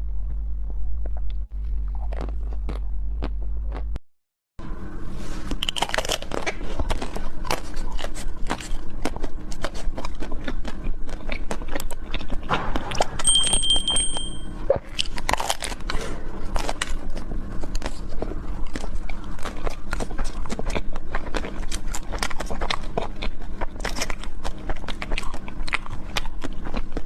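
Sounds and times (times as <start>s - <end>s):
person chewing and biting cake: 1.1s - 4.0s, 5.4s - 12.5s, 14.7s - 27.0s.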